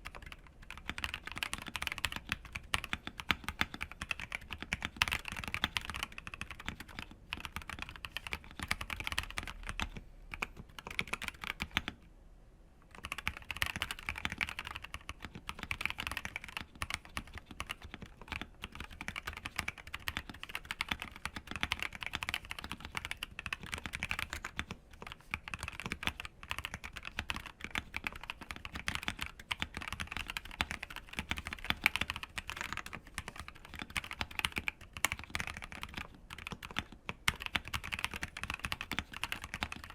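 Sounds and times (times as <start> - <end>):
mechanical keyboard typing: 0.0 - 12.0, 12.9 - 39.9.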